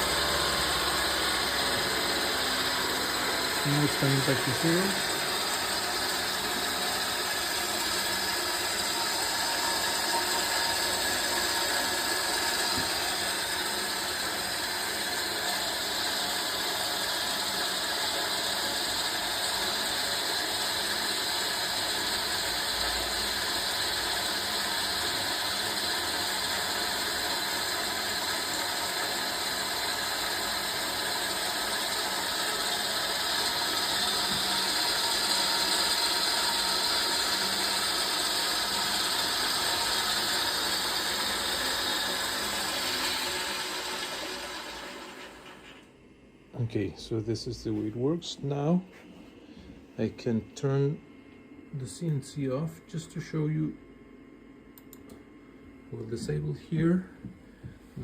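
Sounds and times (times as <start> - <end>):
lathe mechanical whine: 0.0 - 45.9.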